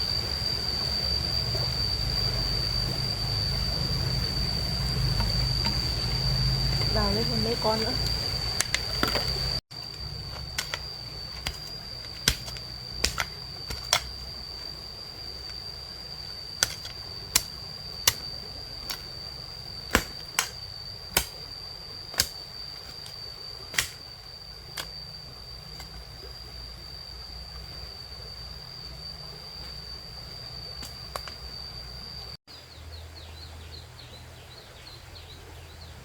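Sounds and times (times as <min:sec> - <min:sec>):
high-pitched insect drone: 0:00.0 - 0:32.4
tool striking soil and stones: 0:08.5 - 0:14.8, 0:16.5 - 0:19.2, 0:19.8 - 0:21.5, 0:22.1 - 0:24.1, 0:30.8 - 0:31.4.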